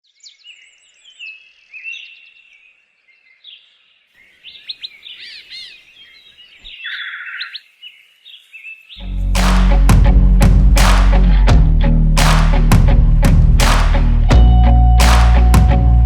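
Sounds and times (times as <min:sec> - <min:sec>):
birds singing and calling: 0:00.1 - 0:09.0.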